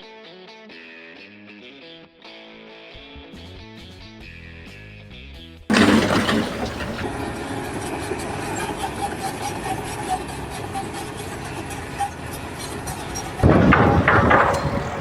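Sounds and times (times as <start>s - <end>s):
dense noisy clatter: 5.7s - 15.0s
engine running steadily: 5.7s - 15.0s.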